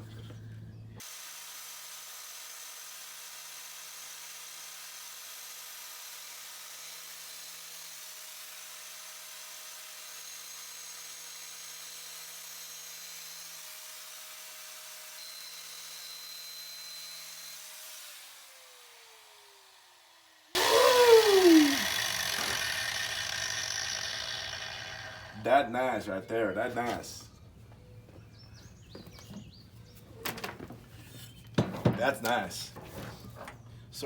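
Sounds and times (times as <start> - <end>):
electric grinder whining: 18.5 - 25.5.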